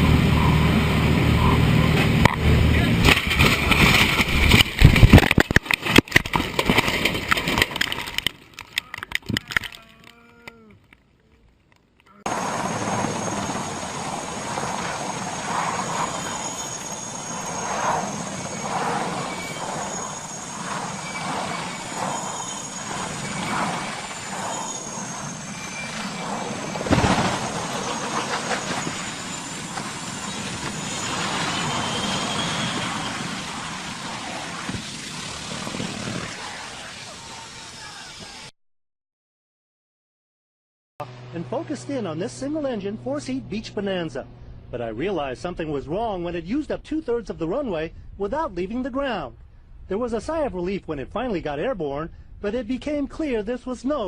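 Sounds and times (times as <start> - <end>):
aircraft whine and rumble: 0.0 - 10.3, 12.1 - 38.5, 41.0 - 48.3
loud impact: 25.7 - 29.4.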